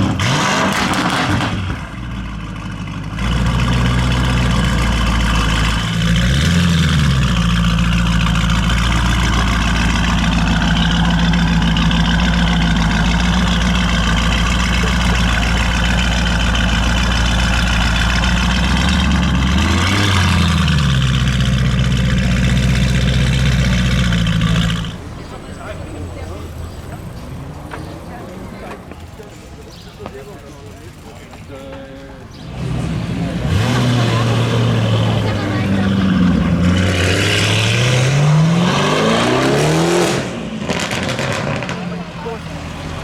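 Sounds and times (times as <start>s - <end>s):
car engine idling loud: 0.0s - 26.8s, 28.9s - 37.9s.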